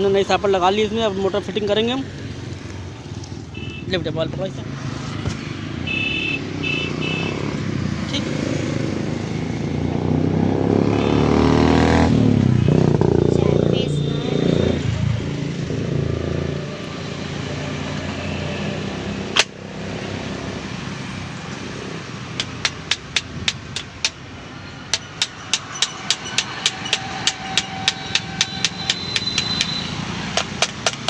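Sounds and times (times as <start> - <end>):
hammer tapping on metal: 22.4 - 24.2, 24.9 - 31.0.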